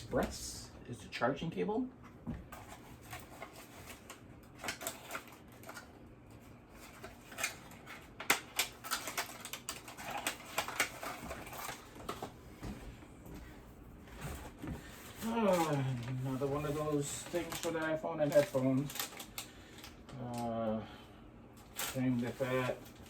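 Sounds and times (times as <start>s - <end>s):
electronics being handled: 2.0s - 20.5s, 21.5s - 23.0s
plastic packaging crinkling: 2.5s - 12.4s, 14.3s - 20.5s, 21.5s - 23.0s.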